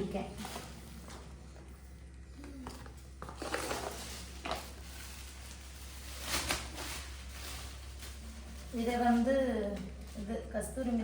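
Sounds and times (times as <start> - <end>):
packets rustling and crinkling: 2.4 - 11.0.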